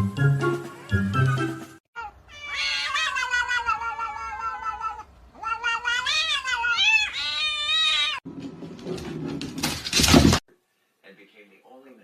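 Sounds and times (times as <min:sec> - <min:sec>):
cat yowling: 0:02.0 - 0:08.2.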